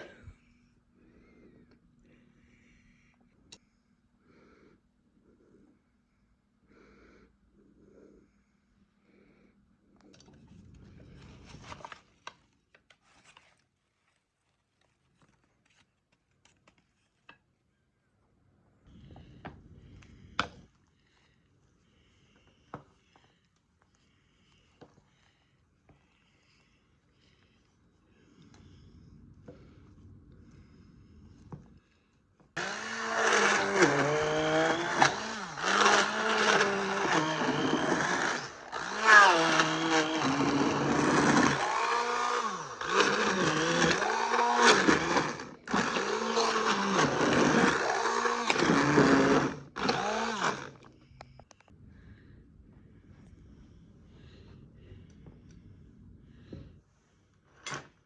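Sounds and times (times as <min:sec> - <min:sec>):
blender motor whining: 0:32.6 - 0:51.0.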